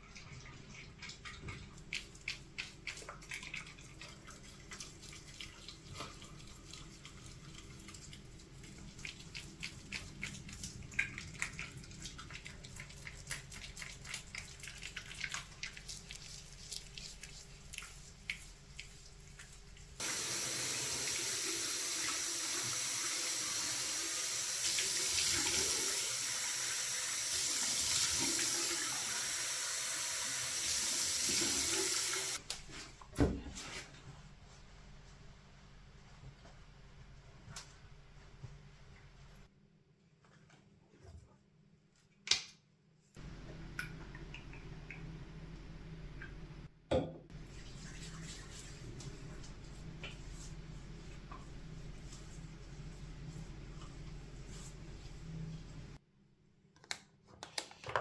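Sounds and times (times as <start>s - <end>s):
tap water running into sink: 20.0s - 32.4s.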